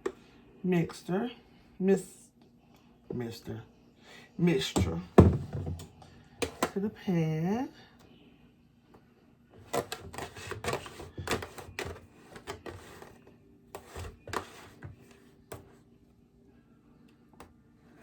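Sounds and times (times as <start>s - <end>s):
utensil scraping a mixing bowl: 9.6s - 13.2s, 13.8s - 15.0s.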